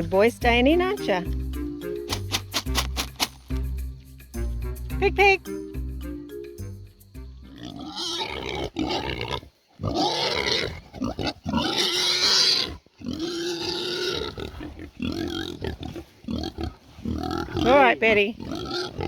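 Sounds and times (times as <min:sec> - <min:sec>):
pigs squealing: 0:07.5 - 0:19.0.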